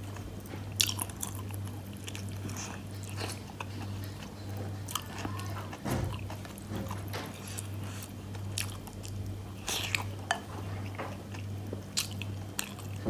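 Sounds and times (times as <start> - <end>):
person chewing food: 0.1 - 5.5, 7.4 - 10.1, 11.3 - 13.0.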